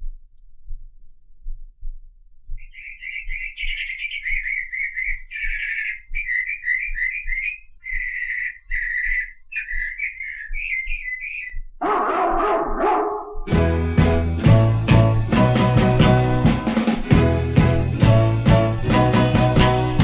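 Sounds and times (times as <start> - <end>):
soft low thumps: 0.0 - 2.7, 10.5 - 18.9
whistled bird-like chirps: 2.6 - 11.7
band playing: 11.8 - 20.0.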